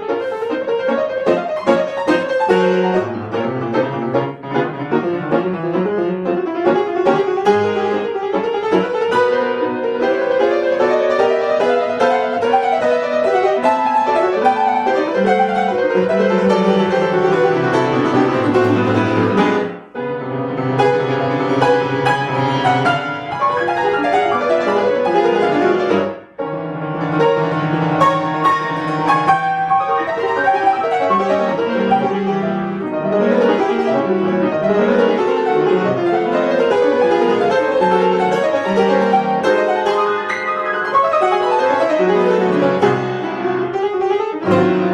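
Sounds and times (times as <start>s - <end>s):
classical piano piece: 0.0s - 44.9s.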